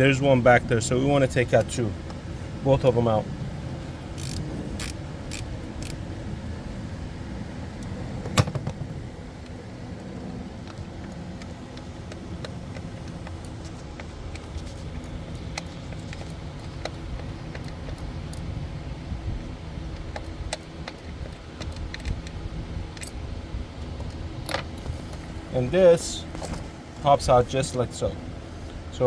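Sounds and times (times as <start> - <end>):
steady low rumble: 0.0 - 29.0
ratchet clicking: 4.2 - 6.0
metal clank: 8.3 - 9.0.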